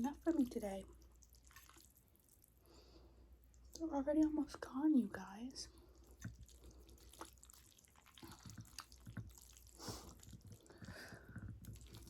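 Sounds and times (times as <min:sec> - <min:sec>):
wet chewing and lip smacks: 0:00.9 - 0:02.6, 0:03.4 - 0:03.8, 0:05.9 - 0:12.0
noodle slurp: 0:05.9 - 0:12.0.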